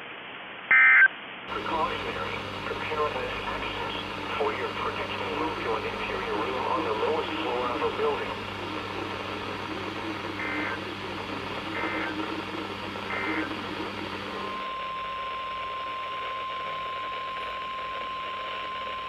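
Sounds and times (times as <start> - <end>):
radio hiss and hum: 0.0 - 19.0
warbling data bursts: 0.8 - 15.7
steady single-pitch alert tone: 0.8 - 19.0.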